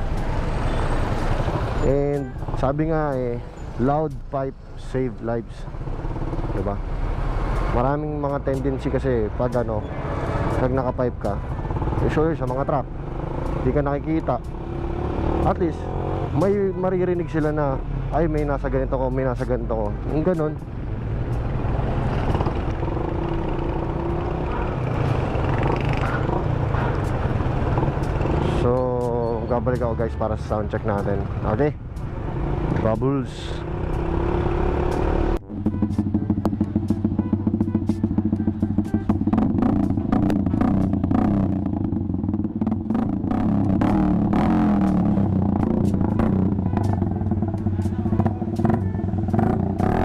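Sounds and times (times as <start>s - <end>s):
motorcycle engine running: 5.7s - 17.5s, 19.2s - 50.0s
motorcycle engine exhaust pulse: 35.4s - 50.0s.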